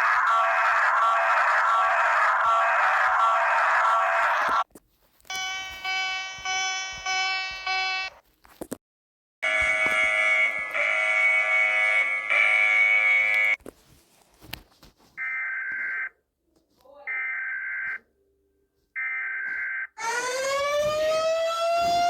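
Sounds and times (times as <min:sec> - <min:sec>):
harsh continuous buzzing alarm: 0:00.0 - 0:04.6, 0:05.3 - 0:08.1, 0:09.4 - 0:13.6, 0:19.6 - 0:22.0.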